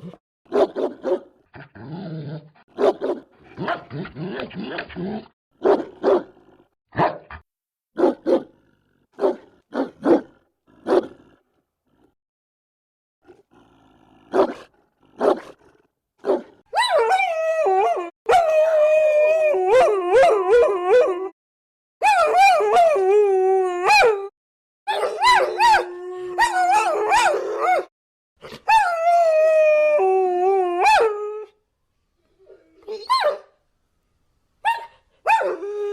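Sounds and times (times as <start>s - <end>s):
dog barks: 0.5s - 1.4s, 2.7s - 4.4s, 5.6s - 7.4s, 8.0s - 8.6s, 9.2s - 11.2s, 14.3s - 15.6s, 16.2s - 17.0s, 24.9s - 28.7s, 33.1s - 33.5s, 34.6s - 35.6s
dogs howling and whining: 16.7s - 21.4s, 22.0s - 24.3s, 24.9s - 27.9s, 28.6s - 31.6s, 32.4s - 33.5s, 34.7s - 35.9s.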